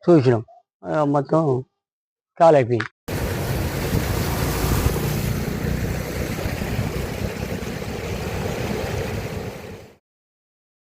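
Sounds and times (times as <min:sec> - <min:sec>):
floodwater rushing: 0:03.1 - 0:10.0.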